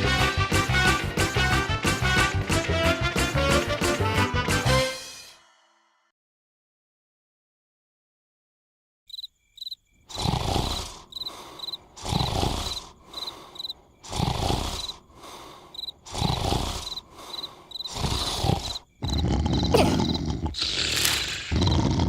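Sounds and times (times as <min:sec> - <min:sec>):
high cricket-like chirps: 0:09.1 - 0:21.9
cartoon snoring: 0:10.1 - 0:22.0.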